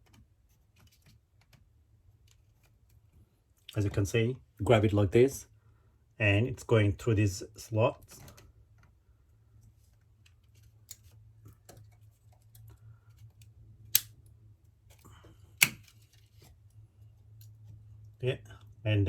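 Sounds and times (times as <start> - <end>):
punch-down tool snaps: 13.9 - 14.1, 15.6 - 15.9.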